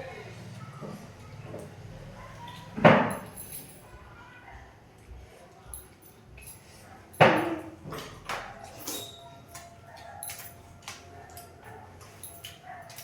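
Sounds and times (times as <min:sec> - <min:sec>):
clicks and clinks of eating: 0:05.5 - 0:13.0.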